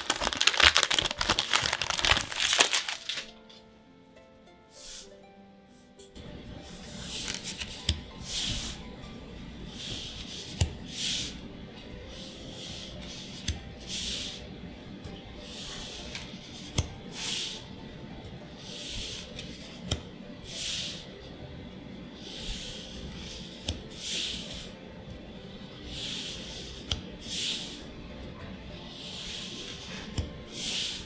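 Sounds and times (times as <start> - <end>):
cards swishing against cards: 0.0 - 3.3, 7.0 - 8.8.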